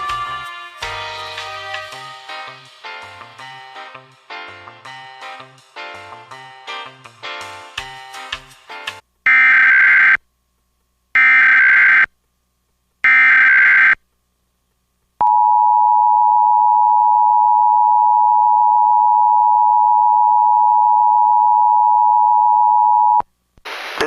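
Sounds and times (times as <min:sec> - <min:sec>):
warbling modem-like data bursts: 0:13.1 - 0:14.0.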